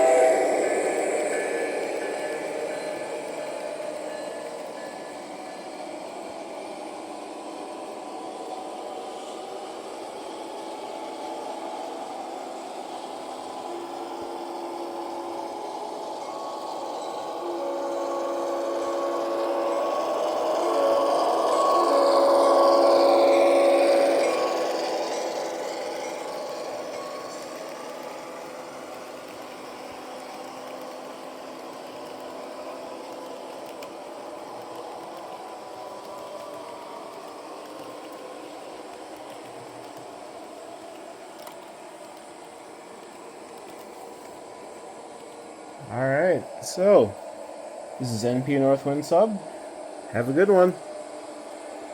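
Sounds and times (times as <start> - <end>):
held tone: 0.0 - 6.3, 13.8 - 25.3
model locomotive diesel engine sound: 0.0 - 51.9.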